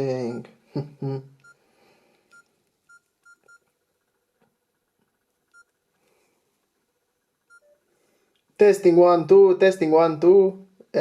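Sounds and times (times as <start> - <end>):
faint keypad beeps: 1.4 - 1.6, 2.3 - 3.7, 5.5 - 5.8, 7.5 - 7.8.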